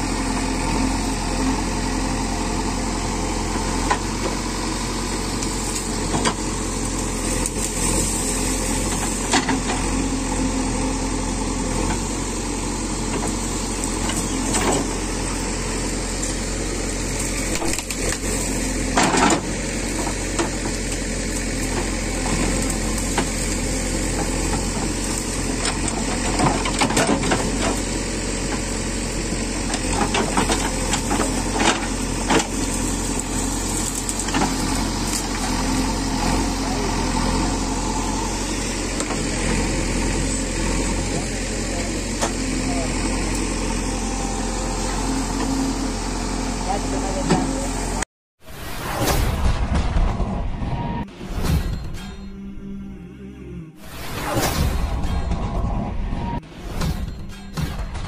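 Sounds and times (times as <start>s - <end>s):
diesel engine running: 0.0s - 58.0s
knocks and clatter: 56.7s - 58.0s.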